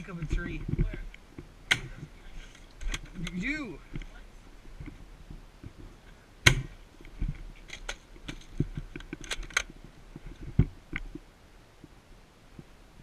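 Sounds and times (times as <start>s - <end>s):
sharp clicks and knocks: 4.8s - 11.2s.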